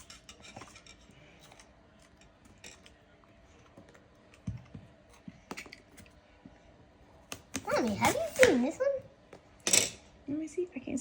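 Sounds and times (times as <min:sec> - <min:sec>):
kitchen utensils clicking and tapping: 0:00.0 - 0:03.0.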